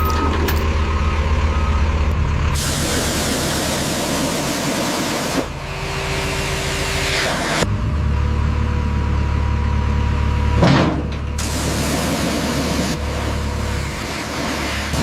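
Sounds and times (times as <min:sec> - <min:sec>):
loud hiss: 0:02.6 - 0:05.5, 0:11.4 - 0:15.0.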